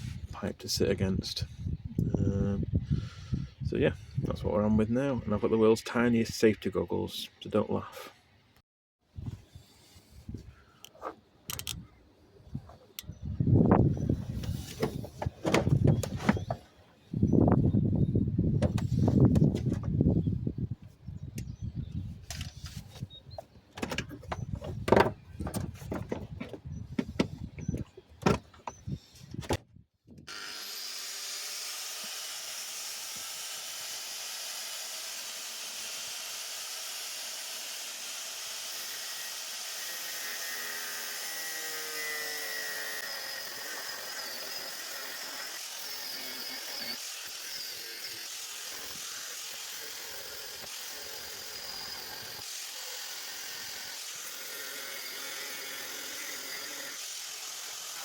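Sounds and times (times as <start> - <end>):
angle grinder cutting metal: 30.3 - 58.0.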